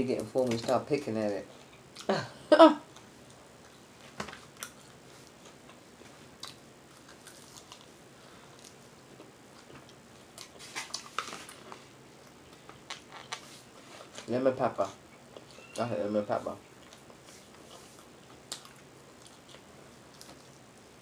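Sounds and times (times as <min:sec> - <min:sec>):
person chewing food: 0:02.8 - 0:14.3, 0:15.1 - 0:15.7, 0:16.6 - 0:20.8.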